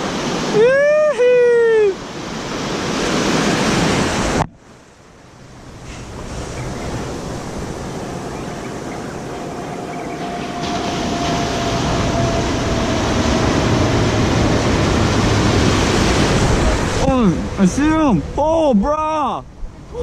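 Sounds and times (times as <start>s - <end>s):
ocean surf washing on shore: 0.0s - 20.0s
wind on microphone: 5.4s - 18.8s.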